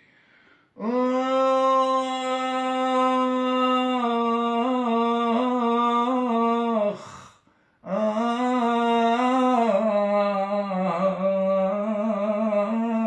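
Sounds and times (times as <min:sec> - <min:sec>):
person breathing: 0:00.0 - 0:00.8, 0:07.0 - 0:07.9
man singing unaccompanied: 0:00.8 - 0:13.0.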